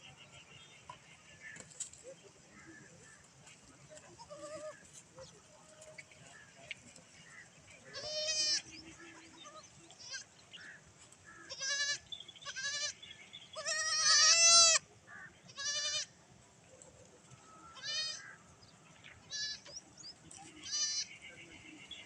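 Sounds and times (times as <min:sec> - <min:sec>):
baby goats bleating: 0:04.2 - 0:04.8, 0:07.9 - 0:08.7, 0:11.4 - 0:13.0, 0:13.6 - 0:14.8, 0:15.5 - 0:16.1, 0:17.8 - 0:18.2, 0:19.3 - 0:19.7, 0:20.6 - 0:21.1.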